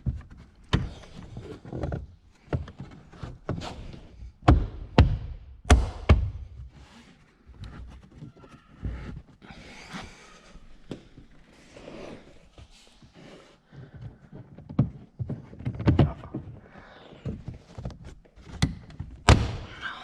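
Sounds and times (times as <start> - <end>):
car parts knocking and clicking: 17.8 - 19.7.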